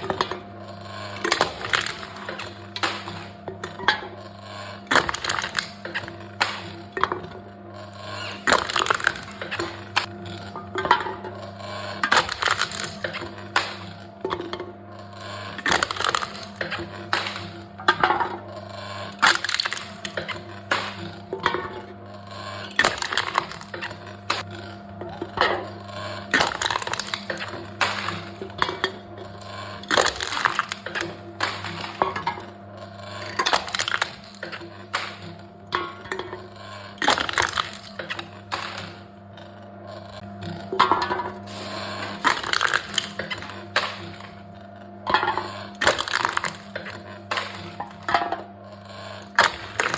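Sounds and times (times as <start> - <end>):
metal cans crunching: 1.1 - 3.2, 4.8 - 6.8, 8.0 - 10.1, 12.0 - 13.9, 15.5 - 17.5, 19.1 - 21.1, 22.7 - 24.5, 26.3 - 28.9, 29.8 - 32.3, 33.1 - 35.4, 37.0 - 39.0, 41.4 - 44.4, 45.2 - 48.1, 49.2 - 49.9.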